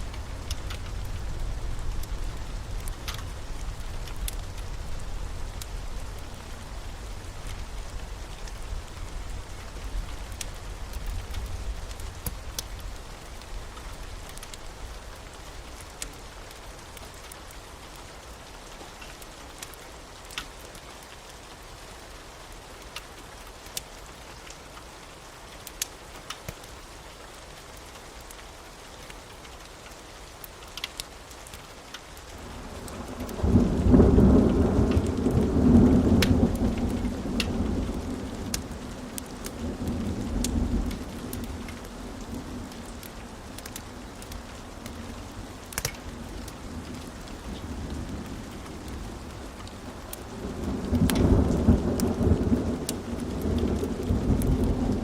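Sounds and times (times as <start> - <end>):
steady rain: 0.0 - 55.0
thunder rumbling: 32.4 - 55.0.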